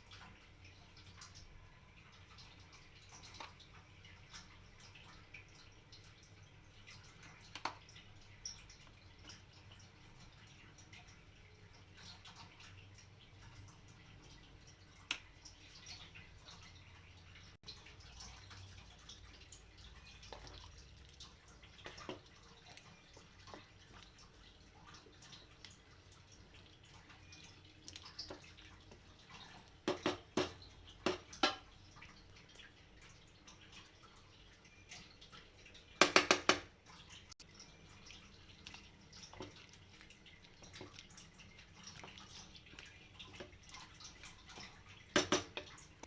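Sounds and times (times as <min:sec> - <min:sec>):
pot simmering with small pops: 0:00.0 - 0:46.0.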